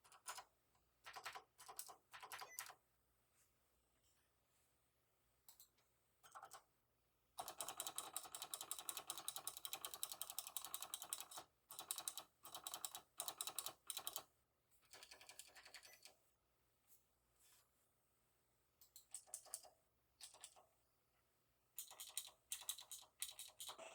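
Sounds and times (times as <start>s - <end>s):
mechanical keyboard typing: 0.0s - 2.8s, 6.2s - 6.6s, 7.4s - 16.1s, 18.9s - 20.6s, 21.8s - 23.9s.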